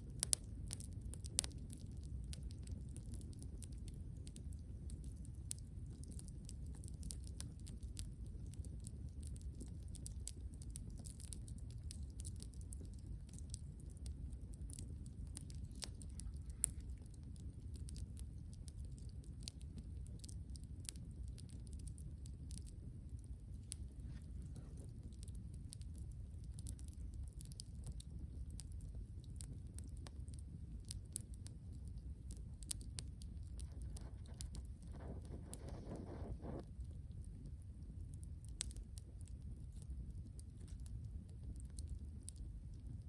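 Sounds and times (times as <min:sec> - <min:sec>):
campfire crackling and popping: 0:00.0 - 0:43.0
low steady rumble: 0:00.0 - 0:43.0.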